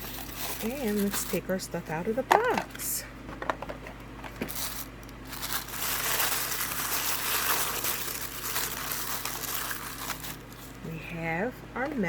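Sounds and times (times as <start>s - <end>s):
packaging crinkling and rustling: 0.0s - 1.6s, 3.7s - 10.8s.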